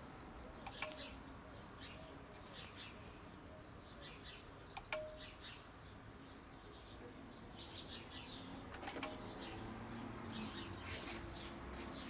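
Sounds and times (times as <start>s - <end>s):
birds chirping: 0.1s - 12.0s
inverter sharp clicks: 0.6s - 1.1s, 4.7s - 5.2s, 8.8s - 9.2s.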